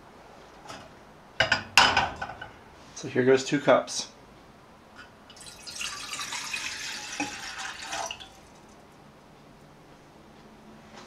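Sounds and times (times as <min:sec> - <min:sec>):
water pouring into kettle: 0:05.3 - 0:08.7.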